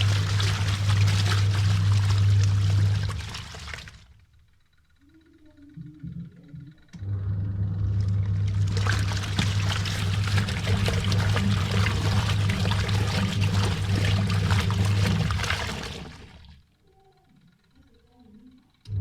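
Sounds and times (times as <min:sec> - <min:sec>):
washing machine water splashing: 0:00.0 - 0:04.4, 0:07.1 - 0:16.7
washing machine hum: 0:00.0 - 0:19.0.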